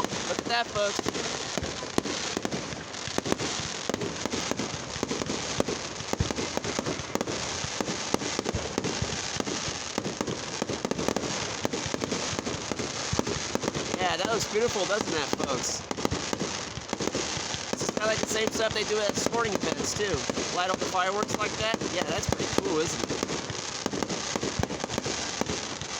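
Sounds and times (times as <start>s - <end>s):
fireworks bangs and crackling: 0.0s - 25.9s.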